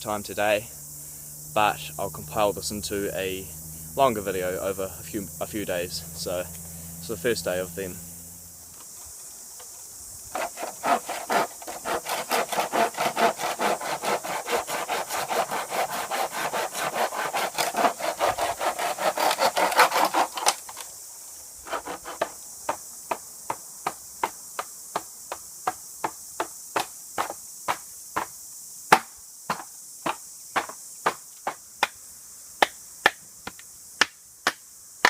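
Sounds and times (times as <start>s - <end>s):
hand saw cutting wood: 10.3s - 20.8s, 21.6s - 22.4s.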